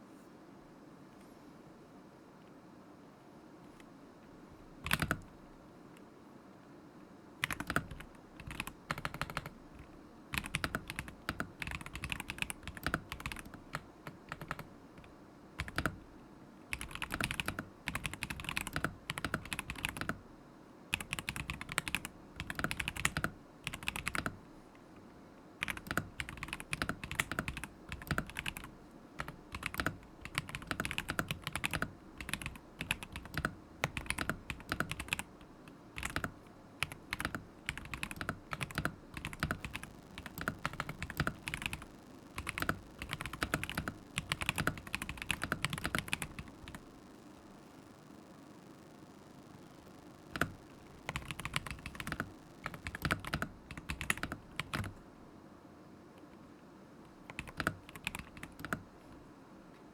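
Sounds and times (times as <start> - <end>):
mechanical keyboard typing: 4.8 - 5.3, 7.4 - 16.0, 16.7 - 20.2, 20.9 - 24.4, 25.6 - 35.4, 36.0 - 55.0, 57.3 - 58.8.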